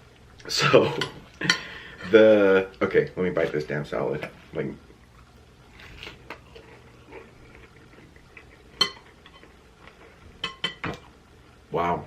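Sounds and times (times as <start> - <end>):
faint eating noises: 0.0 - 12.0
cutlery clinking against dish: 8.8 - 9.5, 10.4 - 11.0.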